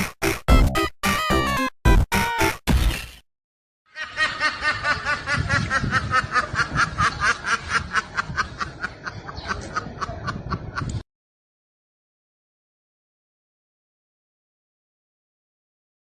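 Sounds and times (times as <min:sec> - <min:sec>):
rapid snickering laugh: 0:04.0 - 0:11.0.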